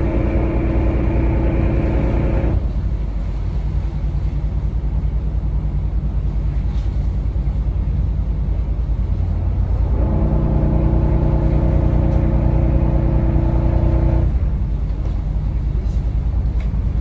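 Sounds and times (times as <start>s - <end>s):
boat engine throbbing: 0.0s - 5.3s, 8.9s - 17.0s.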